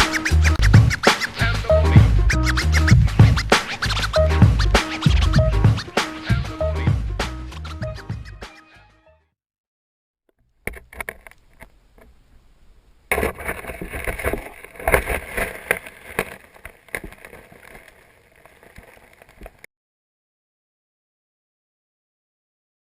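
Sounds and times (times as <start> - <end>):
sharp clicks and crackles: 10.3 - 19.7
water: 10.7 - 19.7.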